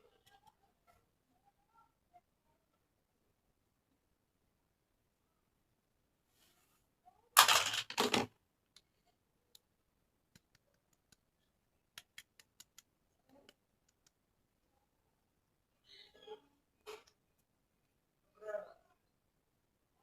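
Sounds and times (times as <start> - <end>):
toy pieces clicking and tapping: 7.4 - 8.2.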